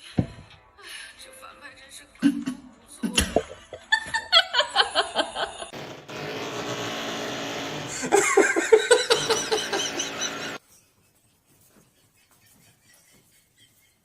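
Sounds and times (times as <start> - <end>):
people laughing: 3.1 - 5.8, 7.9 - 14.0.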